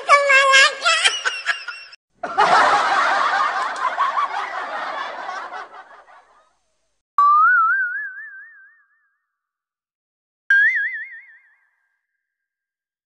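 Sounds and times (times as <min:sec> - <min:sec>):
crowd laughing: 0:00.8 - 0:06.7
warbling boing tone: 0:07.2 - 0:09.2.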